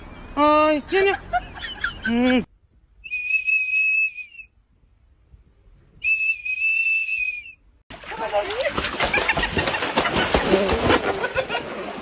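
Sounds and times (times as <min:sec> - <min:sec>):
high steady whistle: 0:03.0 - 0:04.6, 0:06.0 - 0:07.7.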